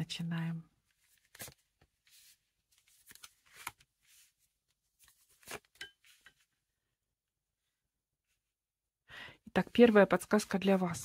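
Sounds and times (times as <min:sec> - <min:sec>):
cards shuffling: 0:01.0 - 0:04.3, 0:05.0 - 0:06.2.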